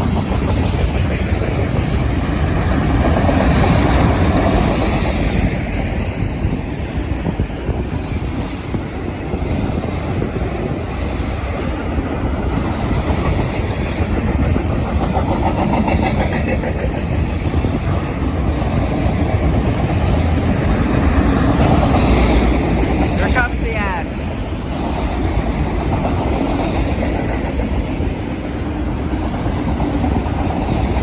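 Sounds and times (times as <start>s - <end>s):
train wheels rumbling on rails: 0.0s - 31.0s.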